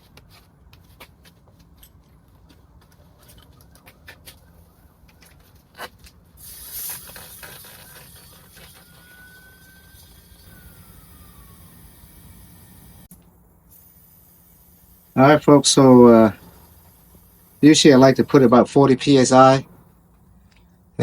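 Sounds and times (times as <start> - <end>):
compressed air hissing into tire: 5.8 - 20.5.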